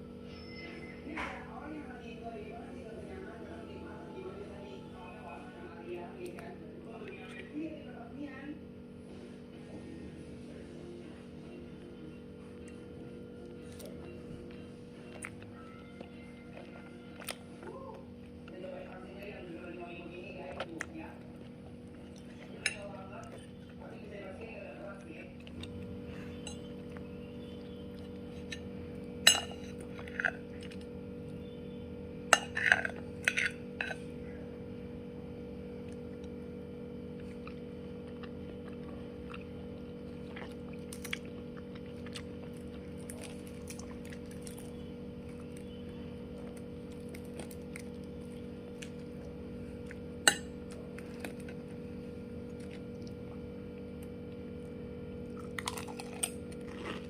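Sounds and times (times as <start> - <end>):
steady low hum: 0.0 - 57.0
dishes and utensils clinking: 29.2 - 30.4, 32.4 - 34.0.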